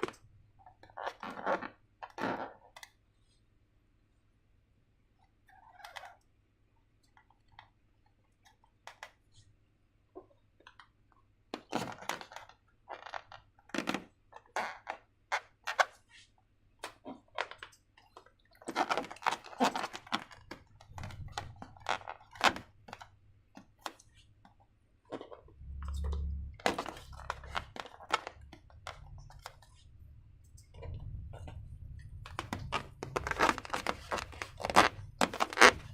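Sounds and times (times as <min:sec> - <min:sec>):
slime crackling and squishing: 0:25.1 - 0:35.9
low thuds: 0:25.5 - 0:35.9.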